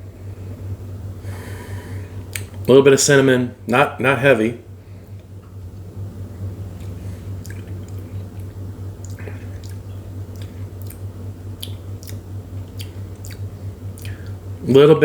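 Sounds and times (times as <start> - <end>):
low hum: 0.0 - 15.0
lip smacks and tongue clicks: 2.3 - 2.7, 6.8 - 14.4.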